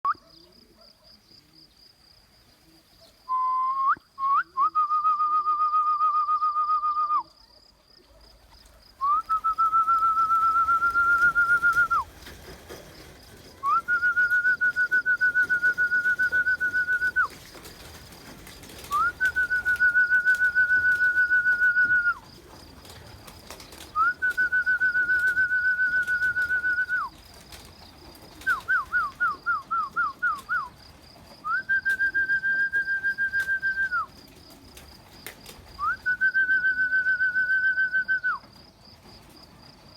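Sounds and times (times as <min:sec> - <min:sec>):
person whistling to pigeons: 0:03.3 - 0:07.3, 0:09.0 - 0:12.2, 0:13.6 - 0:17.4, 0:18.8 - 0:22.3, 0:23.8 - 0:27.2, 0:28.4 - 0:30.8, 0:31.4 - 0:34.1, 0:35.8 - 0:38.5.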